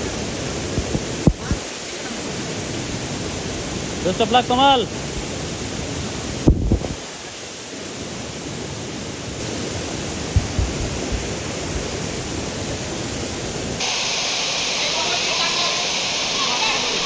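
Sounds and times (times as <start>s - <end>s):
waterfall rushing: 0.0s - 17.0s
low thumps: 10.3s - 11.3s
bright hiss: 13.7s - 17.0s.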